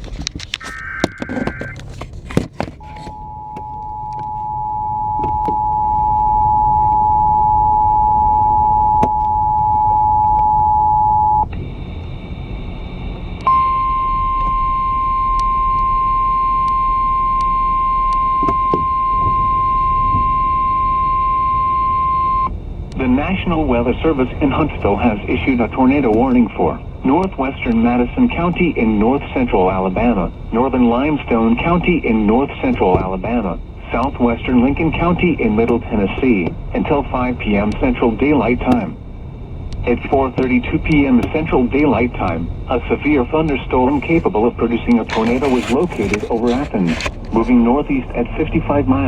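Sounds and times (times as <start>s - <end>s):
two-tone attention signal: 0.6s - 1.8s, 2.8s - 22.5s.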